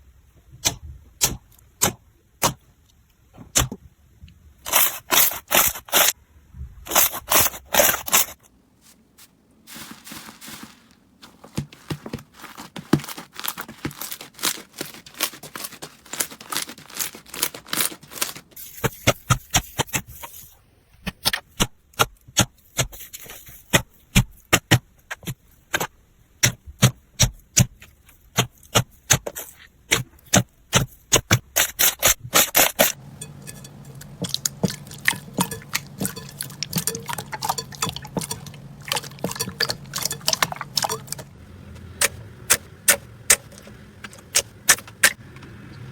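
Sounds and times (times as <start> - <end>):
slime crackling and popping: 13.3 - 18.6.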